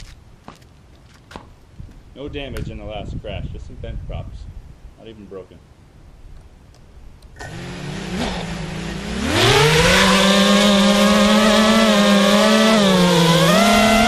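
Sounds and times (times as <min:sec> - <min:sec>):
quadcopter motors whining: 0:07.4 - 0:14.0.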